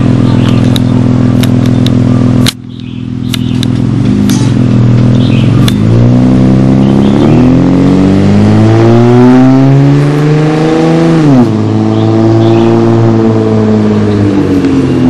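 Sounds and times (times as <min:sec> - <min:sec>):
car engine accelerating: 0:00.0 - 0:15.0.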